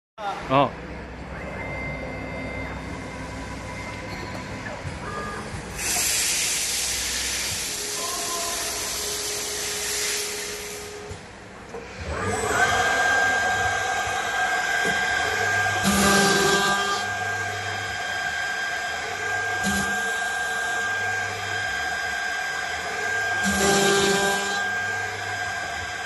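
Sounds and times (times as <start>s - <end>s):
router spindle high whine: 1.1s - 11.2s, 11.8s - 26.0s
loud air hiss: 5.7s - 11.1s.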